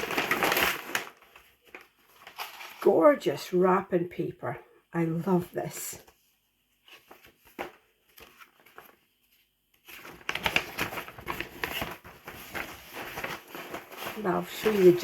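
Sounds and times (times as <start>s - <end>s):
wrapping paper crinkling and rustling: 0.0s - 2.9s, 6.8s - 15.0s.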